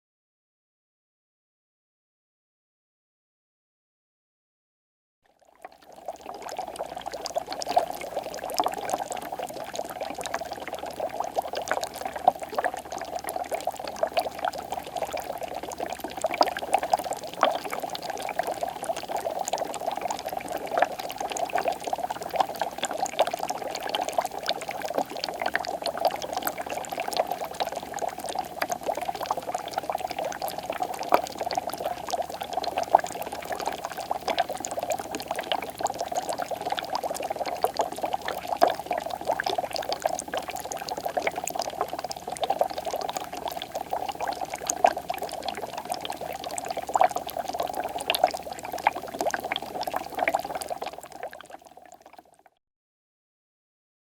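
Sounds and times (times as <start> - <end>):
water bubbling: 5.6 - 52.1.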